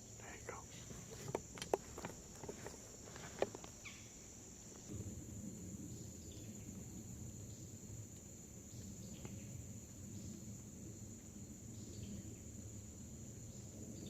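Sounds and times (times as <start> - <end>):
crickets droning: 0.0 - 14.0
low rustling: 0.2 - 3.8.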